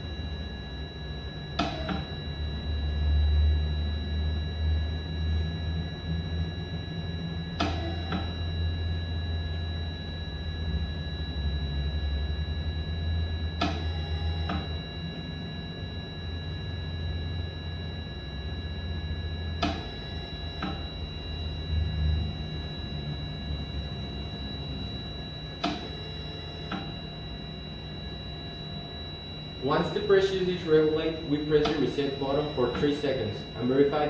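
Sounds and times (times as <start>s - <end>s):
brief tone: 0.0s - 34.0s
ventilator click: 1.6s - 2.1s, 7.6s - 8.3s, 13.6s - 14.7s, 19.6s - 20.0s, 25.6s - 26.0s, 29.6s - 33.0s.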